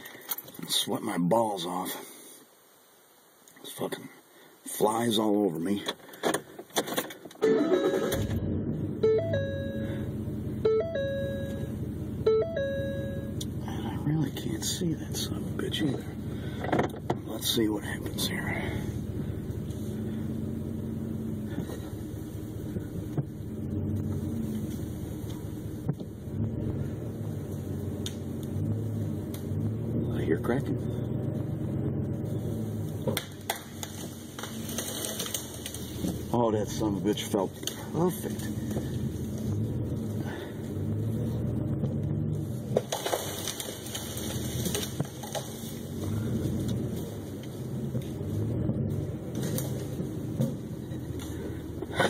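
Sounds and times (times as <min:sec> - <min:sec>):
truck engine running under load: 0:07.7 - 0:52.0
wood cracking and snapping: 0:33.1 - 0:36.4, 0:42.7 - 0:47.5.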